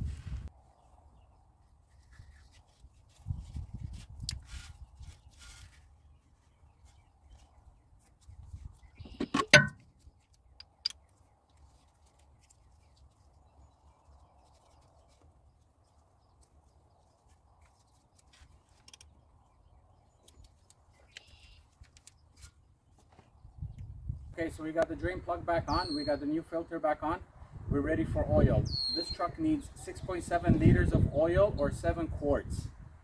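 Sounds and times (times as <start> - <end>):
faint handling noises: 1.6 - 23.9
brief rustle: 1.8 - 5.9.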